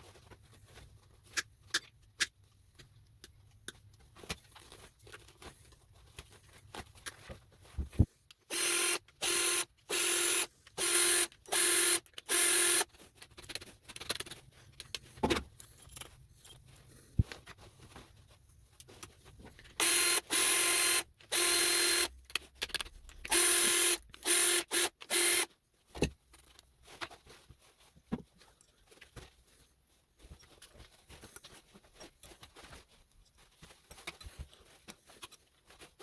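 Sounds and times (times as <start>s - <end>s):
small electric power tool running: 8.5s - 12.9s, 19.8s - 22.1s, 23.3s - 25.5s.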